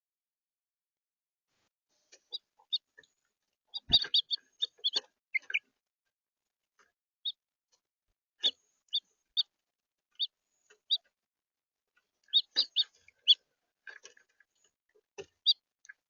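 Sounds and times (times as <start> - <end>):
finches chirping: 3.7 - 5.6, 12.3 - 13.4.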